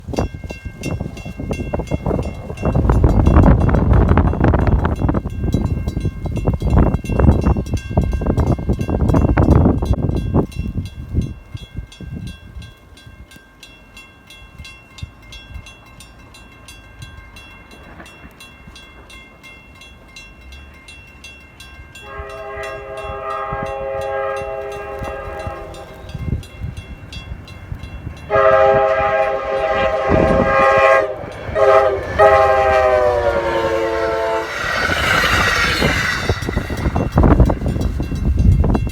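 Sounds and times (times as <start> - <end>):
wind buffeting microphone: 0.0 - 13.3, 16.8 - 38.9
train rushing by: 0.0 - 38.9
locomotive air horn: 22.0 - 26.3, 28.3 - 37.4.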